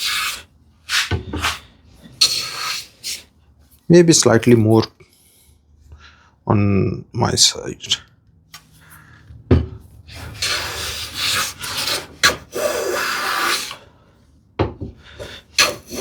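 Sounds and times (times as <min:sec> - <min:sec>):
hand plane hissing through wood: 0:00.0 - 0:03.3, 0:10.1 - 0:13.9, 0:15.1 - 0:16.0.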